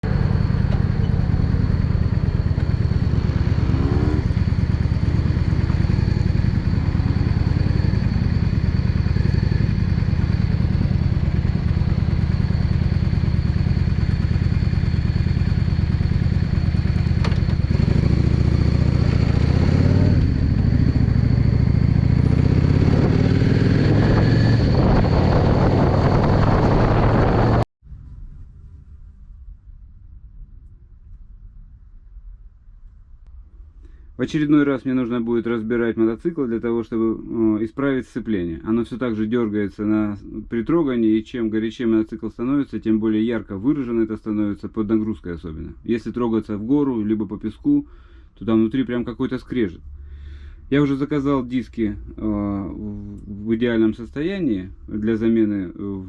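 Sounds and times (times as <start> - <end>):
motorcycle engine revving: 0.0 - 27.6.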